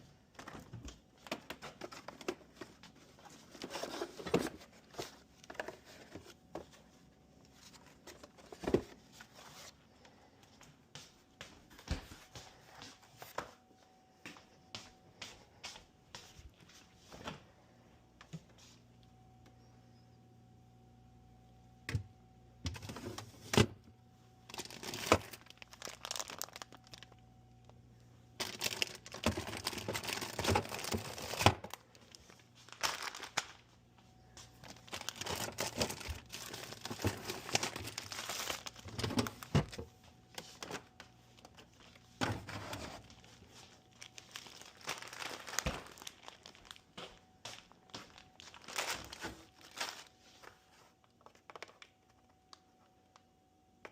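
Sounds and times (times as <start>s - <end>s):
packaging crinkling and rustling: 0.3s - 10.1s, 24.4s - 53.2s.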